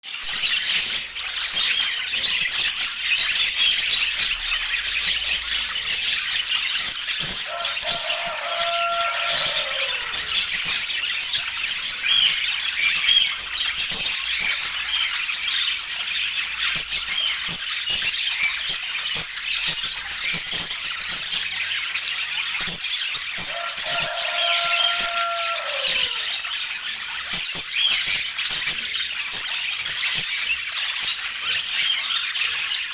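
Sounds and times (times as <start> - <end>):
budgerigars chattering: 0.2 - 32.9
falling bird squawk: 7.5 - 10.8, 23.5 - 26.3.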